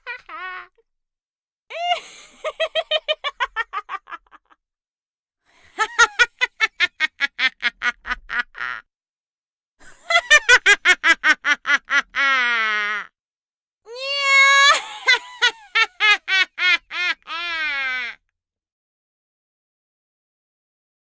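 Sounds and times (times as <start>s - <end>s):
witch cackling laugh: 0.0s - 0.8s, 1.8s - 4.6s, 5.8s - 8.9s, 9.8s - 13.1s, 14.5s - 18.2s.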